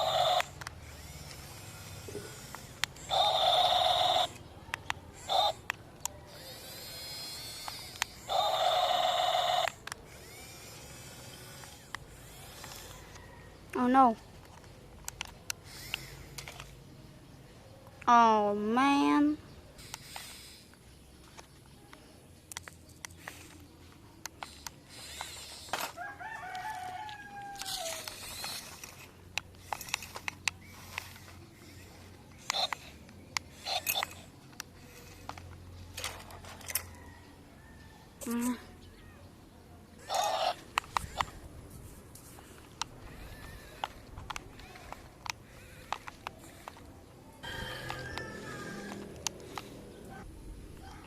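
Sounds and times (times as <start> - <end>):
sharp clicks: 0.0 - 16.8, 19.8 - 26.8, 27.6 - 37.0, 40.0 - 41.5, 42.1 - 50.9
toy excavator buzzing: 0.0 - 16.8, 18.8 - 37.0, 40.0 - 51.0
faint motor whine: 0.0 - 51.0
rooster crowing: 12.8 - 13.6, 26.0 - 28.2, 36.7 - 38.2, 47.4 - 49.3.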